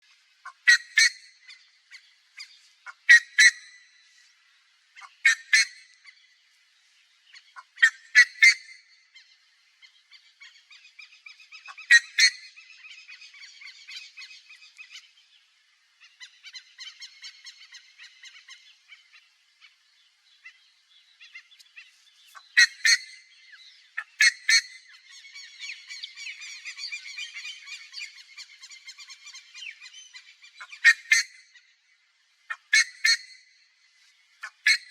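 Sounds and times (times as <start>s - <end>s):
ibis loud calls: 7.6s - 8.8s.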